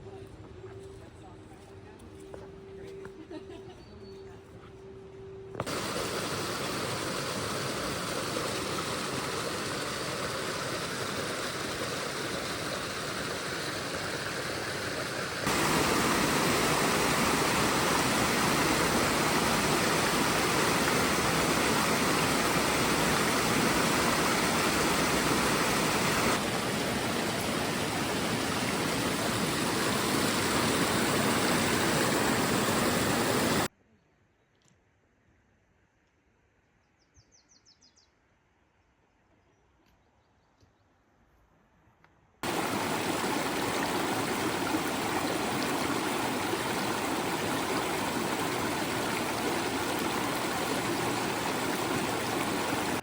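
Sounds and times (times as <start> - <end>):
fast-flowing water rushing: 5.6 - 33.7, 42.4 - 53.0.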